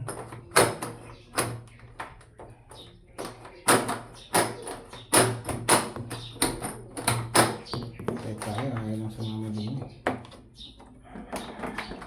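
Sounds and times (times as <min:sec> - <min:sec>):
door lock knocks and clacks: 0:00.0 - 0:01.7, 0:03.2 - 0:08.8.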